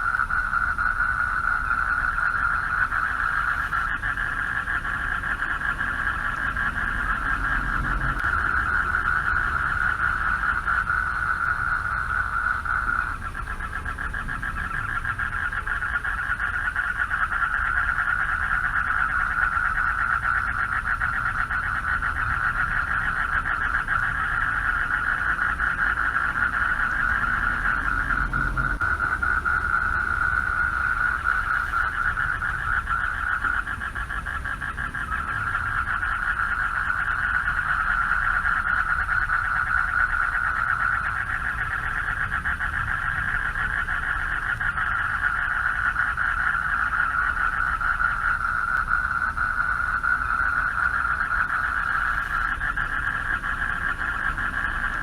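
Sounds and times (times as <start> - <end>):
frogs trilling chorus: 0.0 - 55.0
low rumble: 4.3 - 16.0, 22.0 - 37.0.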